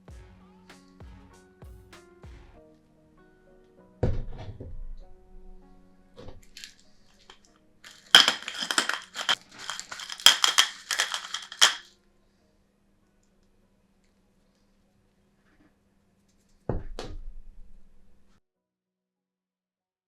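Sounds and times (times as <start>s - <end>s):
grinder crushing grains: 7.9s - 11.8s.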